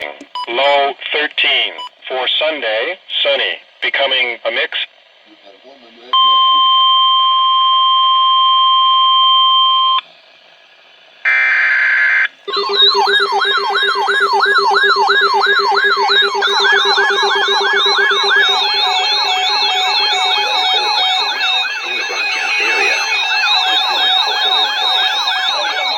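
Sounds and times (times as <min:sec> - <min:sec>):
steady warning tone: 0:11.3 - 0:25.9
steady low hum: 0:12.3 - 0:25.9
data signal noise burst: 0:12.5 - 0:25.9
siren-like falling pitch sweeps: 0:12.5 - 0:25.9.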